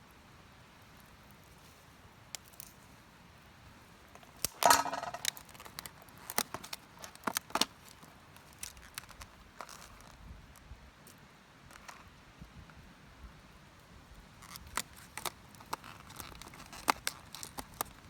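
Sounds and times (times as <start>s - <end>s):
small metal objects clinking: 4.6s - 5.4s.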